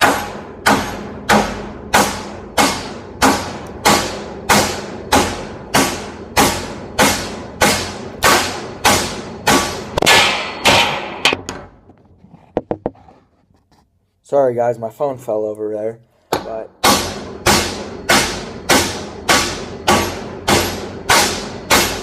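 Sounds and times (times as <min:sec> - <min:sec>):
hammer striking steel: 0:00.0 - 0:11.8, 0:16.3 - 0:22.0.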